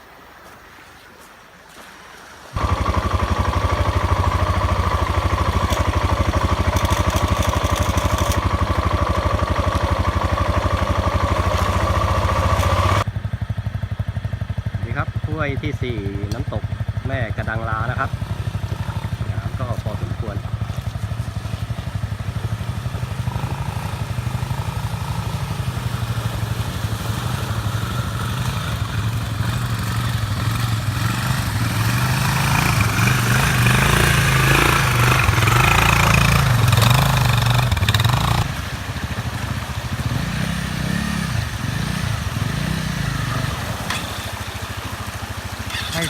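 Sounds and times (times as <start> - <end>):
motorcycle engine running: 2.6 - 46.0.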